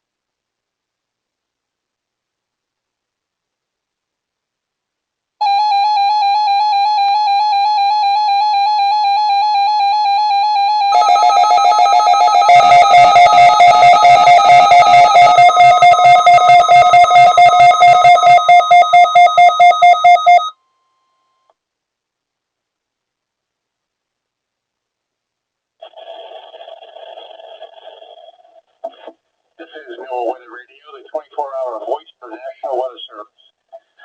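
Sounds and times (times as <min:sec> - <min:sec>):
pulsing electronic tones: 0:11.8 - 0:20.3.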